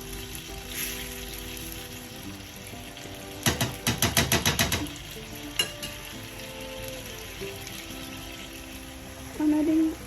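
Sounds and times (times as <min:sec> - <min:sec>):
spoon knocking against pan: 0:03.4 - 0:05.0.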